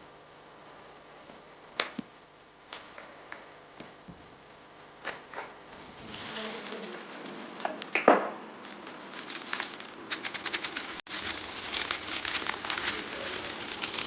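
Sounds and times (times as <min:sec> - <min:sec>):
packaging rustling: 0:08.6 - 0:14.0.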